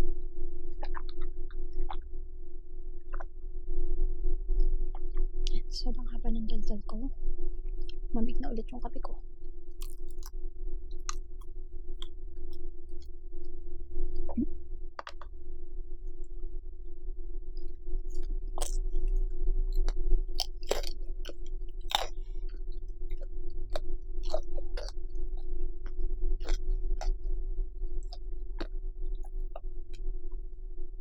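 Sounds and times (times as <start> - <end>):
low hum: 0.0 - 31.0
person chewing food: 0.8 - 2.0, 9.8 - 13.1, 15.0 - 15.3, 18.1 - 27.2, 28.0 - 29.7.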